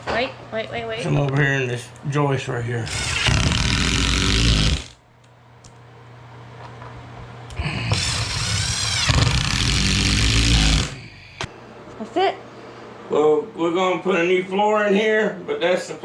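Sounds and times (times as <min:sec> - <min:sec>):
power drill driving screws: 0:02.9 - 0:05.0, 0:07.9 - 0:11.0.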